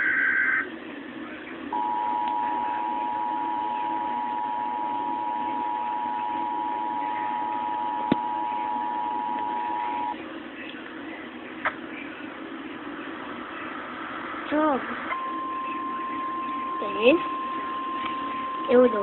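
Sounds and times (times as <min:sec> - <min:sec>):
low background hum: 0:00.0 - 0:19.0
two-tone alarm: 0:01.7 - 0:10.2, 0:15.1 - 0:19.0.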